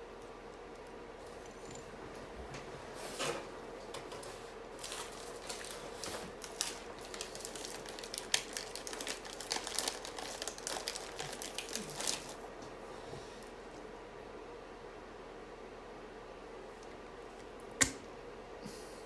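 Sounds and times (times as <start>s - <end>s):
plastic rustling: 4.1s - 12.4s.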